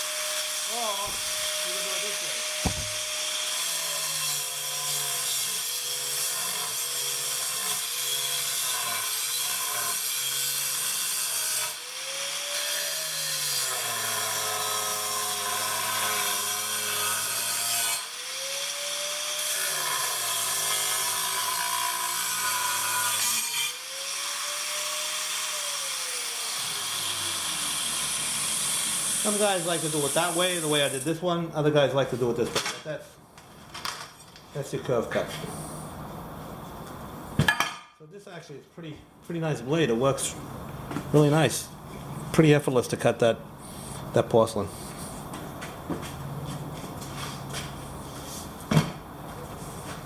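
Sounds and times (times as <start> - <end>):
angle grinder cutting tile: 0.0 - 31.0.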